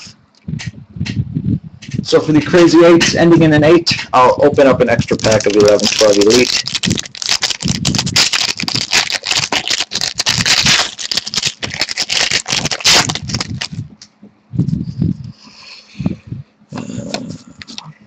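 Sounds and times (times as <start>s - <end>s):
foil wrapper crinkling and tearing: 5.0s - 13.8s.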